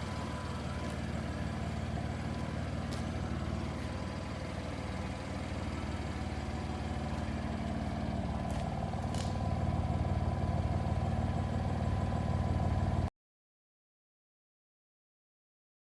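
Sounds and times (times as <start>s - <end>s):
car engine running: 0.0s - 13.1s.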